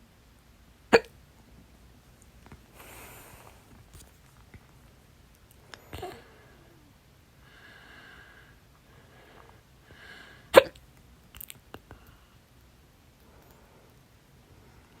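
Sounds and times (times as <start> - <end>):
person hiccuping: 0.9 - 1.1, 10.5 - 10.8.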